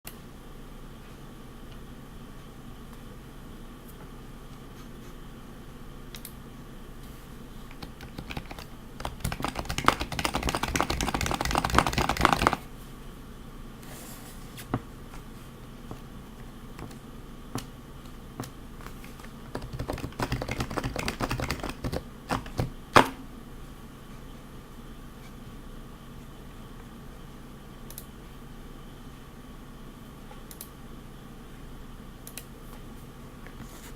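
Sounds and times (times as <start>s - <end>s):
muted keyboard keystrokes: 7.7s - 12.6s, 19.5s - 22.7s.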